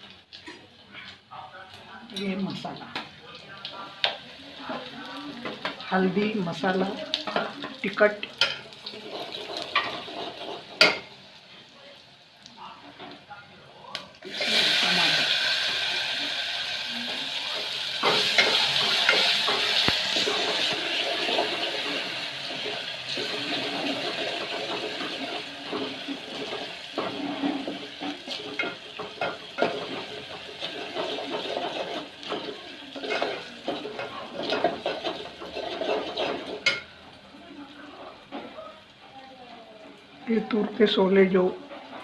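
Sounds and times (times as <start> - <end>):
food sizzling in oil: 1.7 - 42.0
spoon scraping a pan: 6.7 - 11.2, 17.0 - 36.9.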